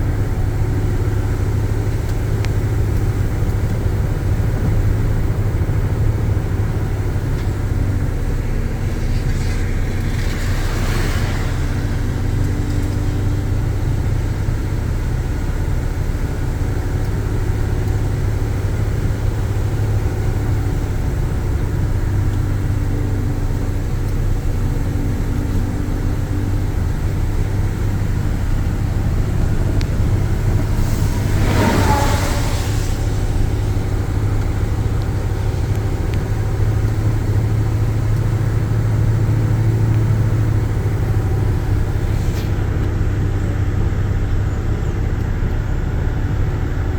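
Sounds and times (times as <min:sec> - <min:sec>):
car engine and road drone: 0:00.0 - 0:46.9
rain hiss: 0:08.7 - 0:14.4, 0:26.7 - 0:42.9.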